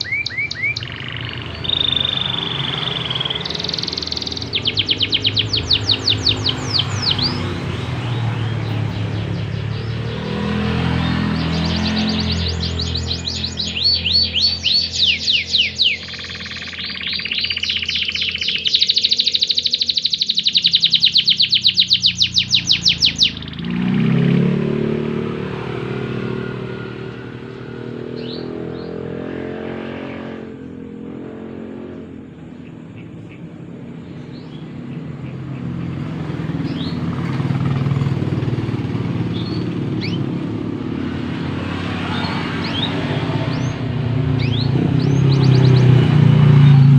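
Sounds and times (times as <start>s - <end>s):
faint bird chirps: 0.0s - 24.9s
canary singing trills: 0.0s - 46.9s
vehicle engine rumbling: 0.0s - 46.9s.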